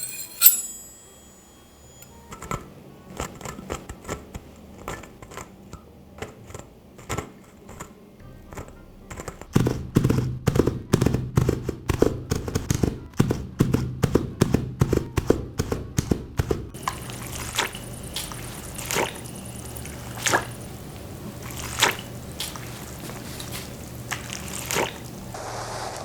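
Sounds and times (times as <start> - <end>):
water dripping and trickling: 16.8 - 25.4.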